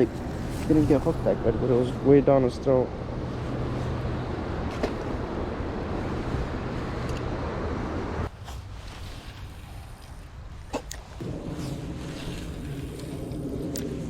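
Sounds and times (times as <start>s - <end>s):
wind on microphone: 3.0s - 14.0s.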